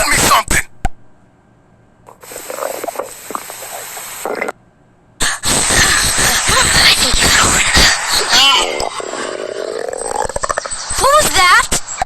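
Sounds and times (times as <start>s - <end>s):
cartoon stomach growl: 2.1s - 4.6s, 8.6s - 10.8s
hissing gurgling: 2.1s - 4.6s.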